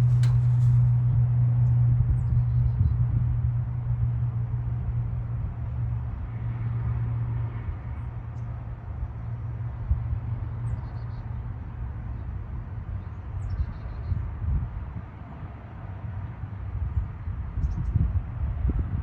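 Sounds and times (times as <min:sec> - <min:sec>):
engine idling: 0:00.0 - 0:01.2.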